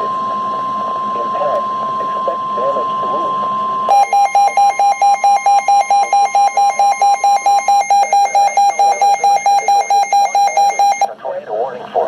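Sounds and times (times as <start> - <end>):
rapid electronic beeps: 0.0 - 11.1
steady alarm tone: 0.0 - 11.2.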